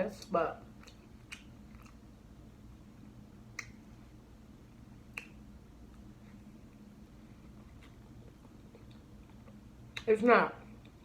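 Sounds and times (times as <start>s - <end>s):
quiet eating: 0.0s - 11.0s
wet mouth clicks: 0.8s - 2.0s, 3.5s - 3.8s, 5.1s - 5.4s.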